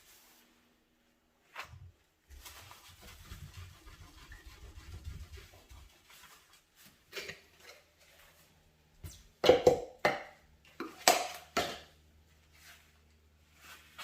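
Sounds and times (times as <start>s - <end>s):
scrubbing strokes: 2.3s - 8.5s, 12.4s - 14.0s.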